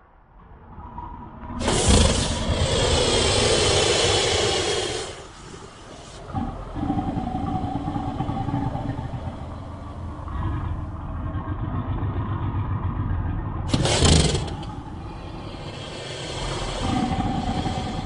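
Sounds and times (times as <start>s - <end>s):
low rumbling growl: 0.4s - 18.0s
harsh monster roar: 1.6s - 11.4s, 13.7s - 18.0s.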